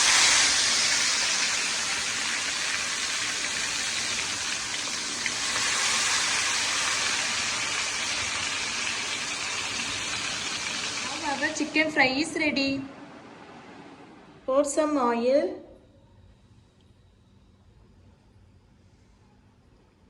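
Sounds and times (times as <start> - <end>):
chicken deep-frying in oil: 0.0 - 11.8.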